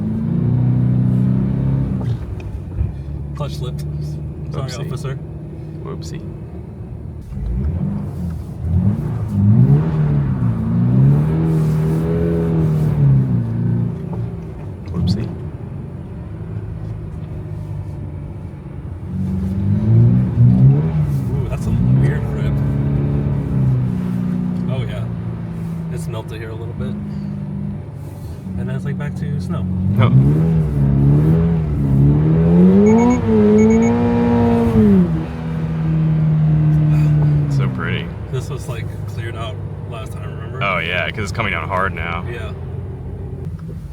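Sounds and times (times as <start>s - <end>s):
car engine revving: 0.0s - 43.9s
short electronic beeps: 32.8s - 34.1s.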